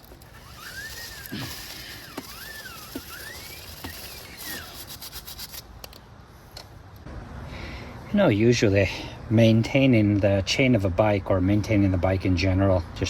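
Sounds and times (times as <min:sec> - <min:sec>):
gliding whistling tone: 0:00.0 - 0:05.6
stiff brush scrubbing chain: 0:00.0 - 0:05.9.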